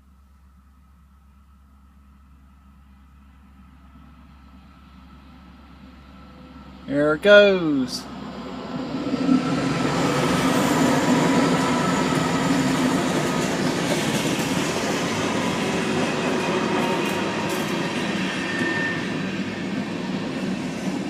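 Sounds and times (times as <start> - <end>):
train wheels rumbling on rails: 8.0 - 21.0.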